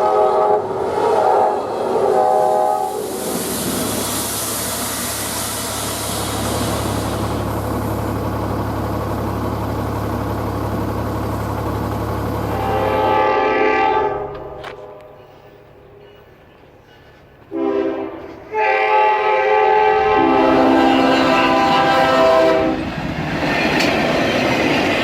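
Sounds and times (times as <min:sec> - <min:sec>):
train horn chord: 0:00.0 - 0:03.0, 0:12.5 - 0:15.4, 0:17.5 - 0:22.8
rushing rail noise: 0:00.0 - 0:25.0
train passing with low rumble: 0:00.0 - 0:25.0.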